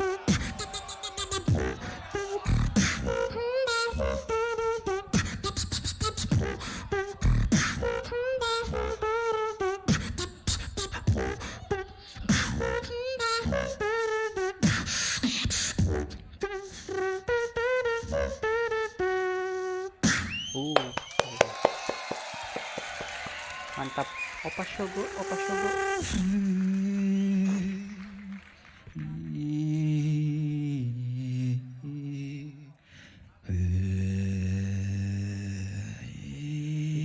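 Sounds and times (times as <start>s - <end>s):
beatbox vocal percussion: 0.0s - 18.4s, 23.8s - 28.3s.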